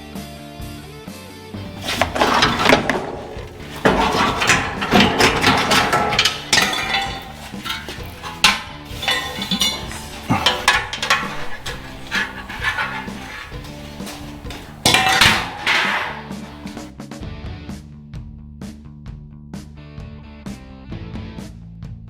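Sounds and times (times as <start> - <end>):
metal clanking and banging: 1.6 - 16.9.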